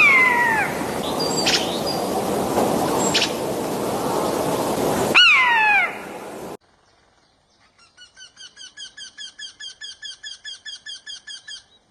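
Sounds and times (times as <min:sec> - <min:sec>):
rushing background noise: 0:00.0 - 0:06.6
bird harsh falling call: 0:05.1 - 0:06.2.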